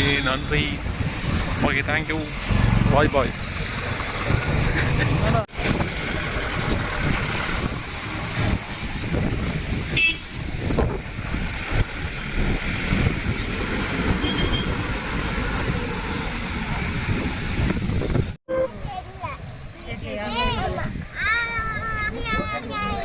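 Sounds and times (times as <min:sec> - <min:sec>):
car horn toot: 0:00.0 - 0:00.7, 0:09.9 - 0:10.3, 0:14.2 - 0:14.8
vehicle engines rumbling: 0:00.0 - 0:23.0.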